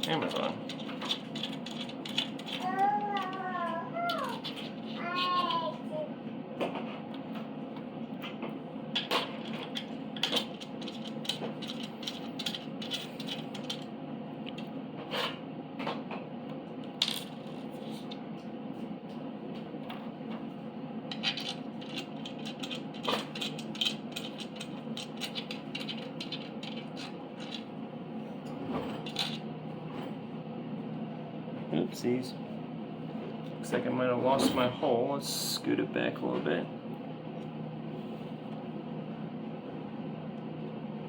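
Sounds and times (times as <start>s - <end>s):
metal parts clicking and rattling: 0.0s - 3.4s, 4.1s - 5.5s, 9.0s - 13.9s, 17.0s - 18.2s, 21.1s - 27.7s, 28.9s - 29.4s
steady low hum: 0.0s - 41.0s.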